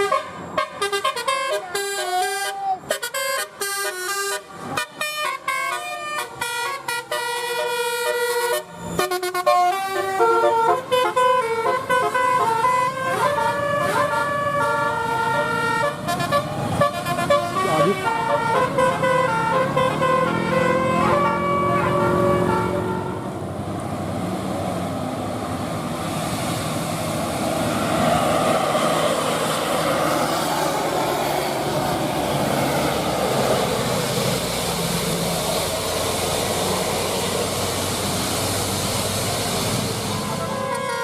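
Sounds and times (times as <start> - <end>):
multi-tone bus horn: 0.0 - 23.4, 40.1 - 41.0
bus passing at speed: 0.0 - 41.0.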